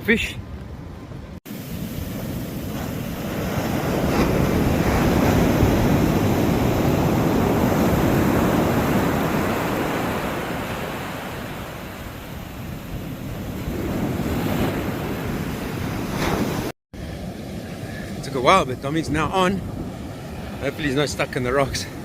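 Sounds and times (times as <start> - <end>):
ocean wave washing in: 1.5 - 18.3.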